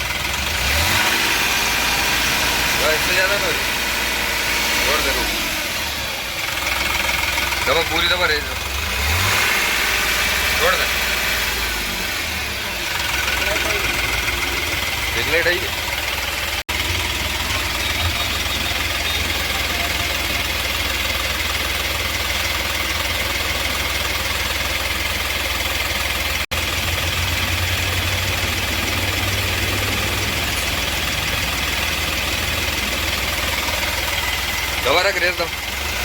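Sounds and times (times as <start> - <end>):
engine idling with misfire: 0.0 - 36.0.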